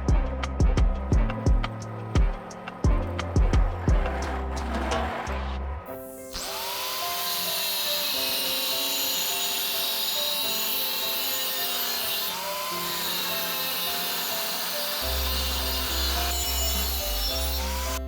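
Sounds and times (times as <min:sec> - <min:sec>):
background music with melody notes: 0:00.0 - 0:18.0.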